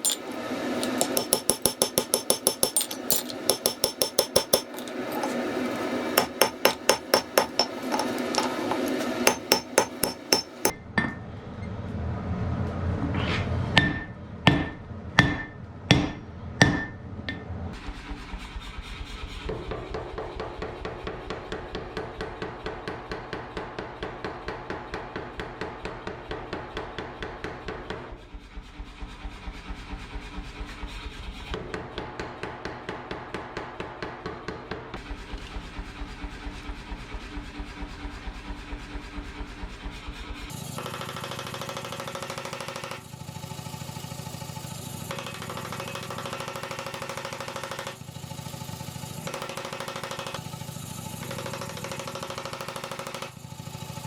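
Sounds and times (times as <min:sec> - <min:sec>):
hammer striking iron on anvil: 0:00.0 - 0:11.2, 0:13.8 - 0:17.6.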